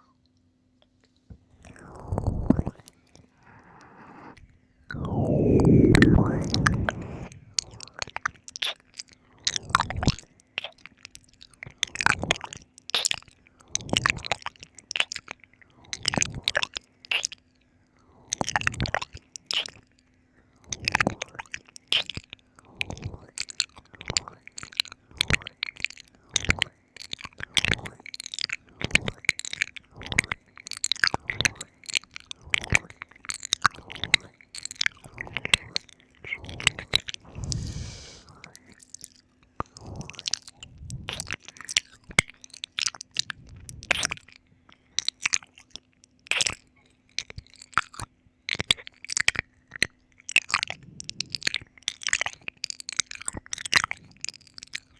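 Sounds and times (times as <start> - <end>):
wet mouth licking sounds: 4.9 - 15.4, 22.9 - 44.4, 45.0 - 46.6.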